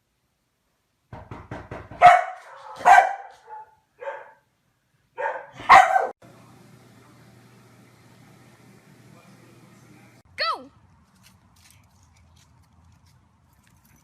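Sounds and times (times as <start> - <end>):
dog barking: 2.0 - 4.5, 5.2 - 6.2.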